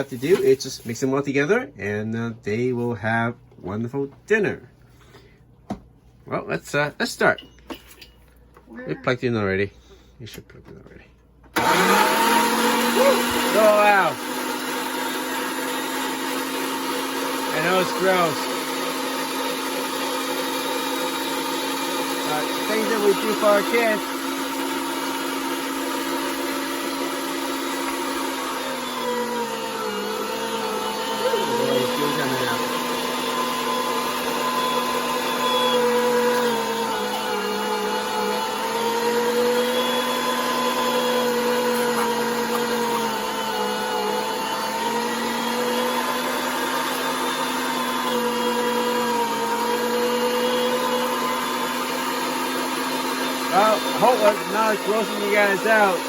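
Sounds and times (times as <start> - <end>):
electric grinder motor running: 11.6 - 56.0.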